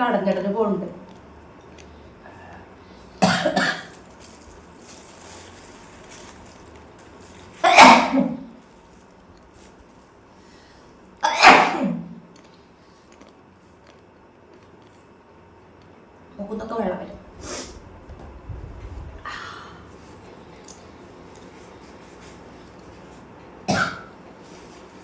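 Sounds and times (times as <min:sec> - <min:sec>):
woman sneezing: 0:07.6 - 0:08.4, 0:11.2 - 0:12.1.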